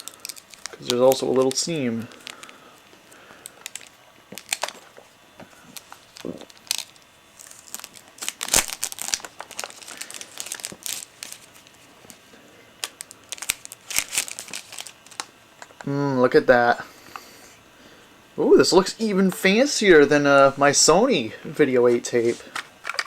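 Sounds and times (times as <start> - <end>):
plastic shrink-wrap crinkling: 0.0 - 15.8.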